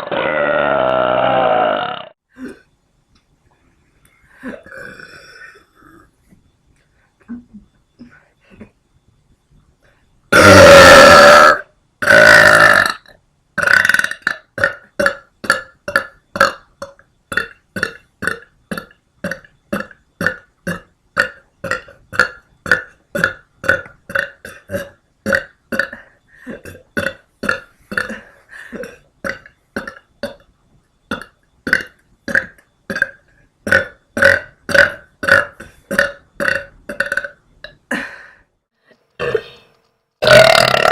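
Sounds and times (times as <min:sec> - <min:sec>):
woman burping: 0:00.0 - 0:02.7, 0:04.4 - 0:06.0, 0:10.3 - 0:30.4, 0:31.1 - 0:38.3, 0:39.2 - 0:40.9.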